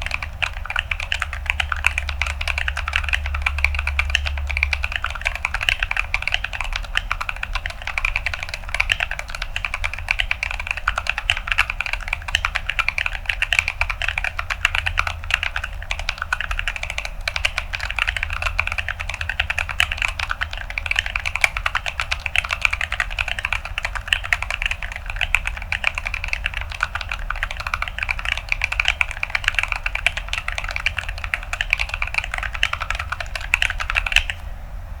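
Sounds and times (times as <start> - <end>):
typing on mechanical keyboard: 0.0 - 34.4.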